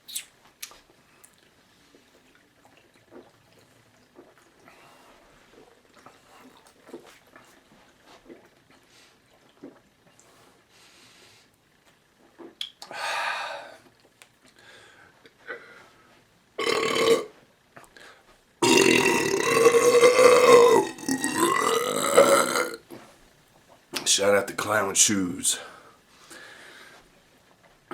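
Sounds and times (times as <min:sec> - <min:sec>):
man belching: 0:16.6 - 0:17.3, 0:18.6 - 0:22.8.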